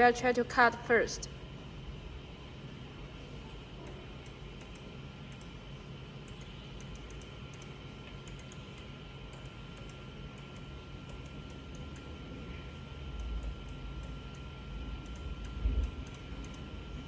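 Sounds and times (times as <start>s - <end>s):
machine hum with high whine: 0.0s - 17.0s
faint control clicks: 6.2s - 12.1s, 13.2s - 16.7s.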